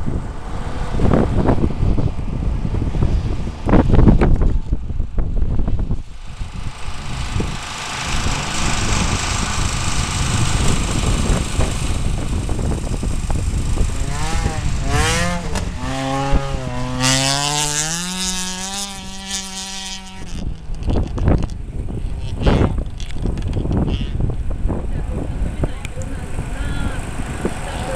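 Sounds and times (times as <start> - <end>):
race car engine revving: 5.9 - 23.1.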